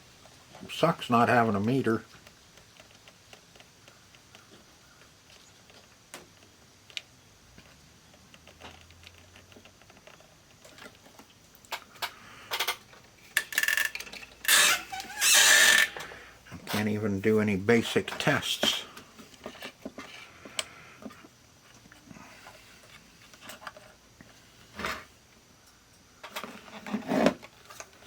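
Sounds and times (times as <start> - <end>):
rustling and scraping: 2.0 - 25.2, 26.2 - 28.0
small parts and tools clattering: 7.6 - 17.0, 17.8 - 24.0, 26.2 - 28.0.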